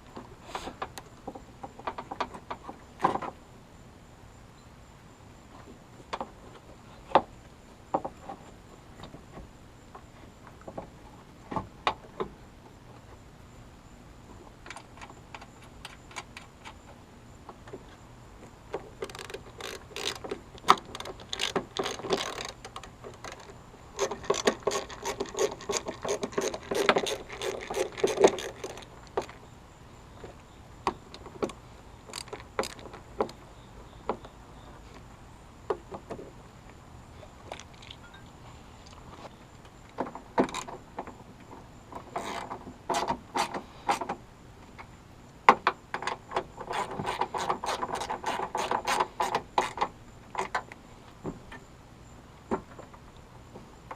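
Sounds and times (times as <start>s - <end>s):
ratchet wrench clicking: 19.0s - 20.3s, 20.9s - 22.6s.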